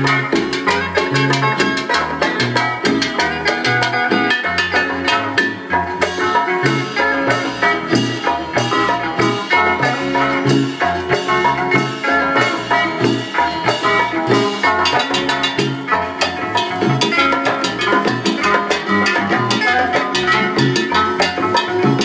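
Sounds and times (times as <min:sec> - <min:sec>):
instrumental latin dance music: 0:00.0 - 0:22.0.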